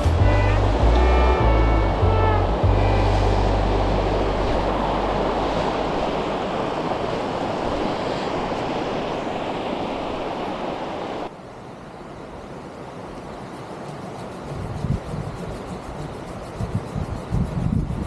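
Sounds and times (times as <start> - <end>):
stream water rushing: 0.0 - 14.1.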